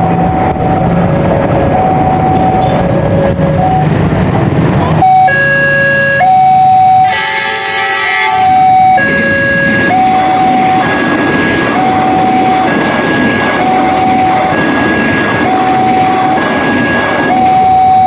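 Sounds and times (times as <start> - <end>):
level crossing alarm: 0.0 - 4.1, 4.8 - 18.0
train rolling past: 0.0 - 18.0
locomotive horn: 4.8 - 18.0.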